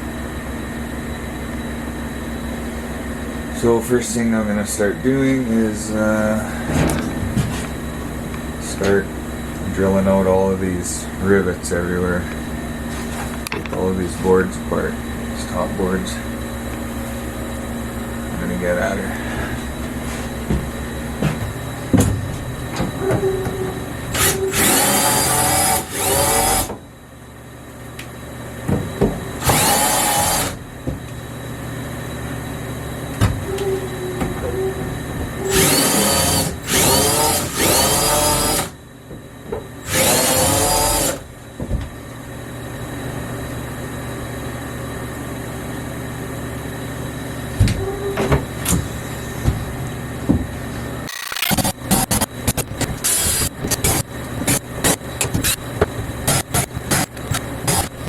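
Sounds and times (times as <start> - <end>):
power drill drilling rivets: 24.1 - 26.7, 29.4 - 30.6, 35.5 - 38.7, 51.1 - 55.7, 56.3 - 58.0.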